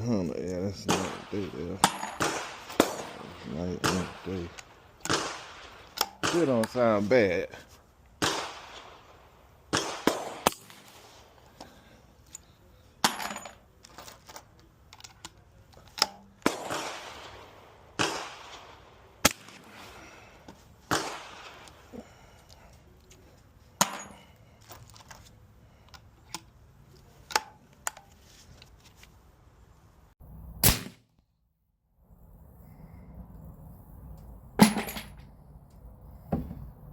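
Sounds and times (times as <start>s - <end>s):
suppressed rifle shots: 0.9s - 6.6s, 8.2s - 9.0s, 9.7s - 11.1s, 16.1s - 19.8s, 30.6s - 31.0s.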